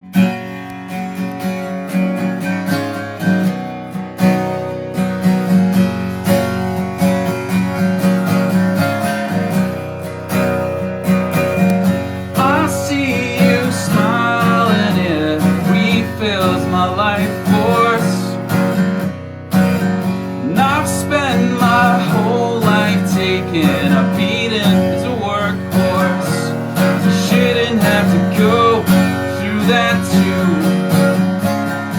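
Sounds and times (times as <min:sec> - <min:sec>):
acoustic guitar strumming: 0:00.0 - 0:31.9
person singing: 0:12.1 - 0:18.5, 0:20.3 - 0:31.2.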